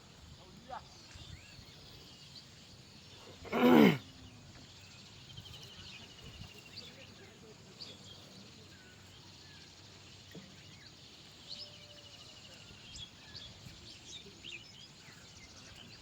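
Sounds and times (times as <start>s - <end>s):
birds chirping: 0.0s - 16.0s
faint outdoor hiss: 0.0s - 16.0s.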